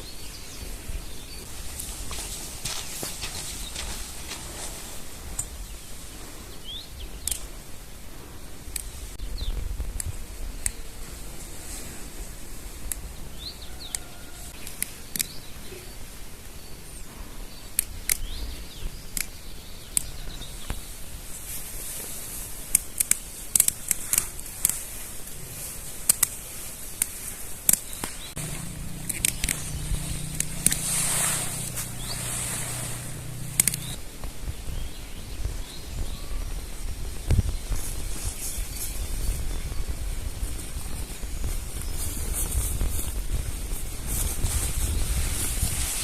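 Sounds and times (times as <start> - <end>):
sharp clicks and snaps: 7.2 - 7.5, 14.6 - 15.4, 17.8 - 18.3, 22.7 - 24.8, 26.0 - 26.4, 27.0 - 30.8, 33.5 - 34.0
bird chirps: 27.8 - 34.0.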